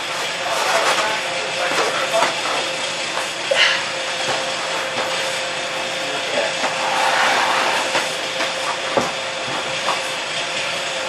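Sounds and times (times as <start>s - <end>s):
compressed air hissing: 6.6s - 8.7s.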